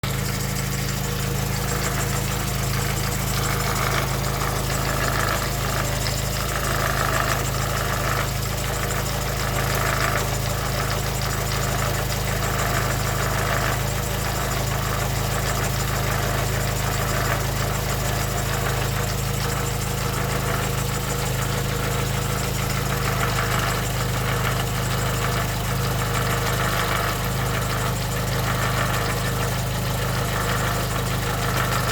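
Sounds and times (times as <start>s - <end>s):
car engine idling: 0.0s - 31.9s
rapid engine knocking: 0.0s - 31.9s.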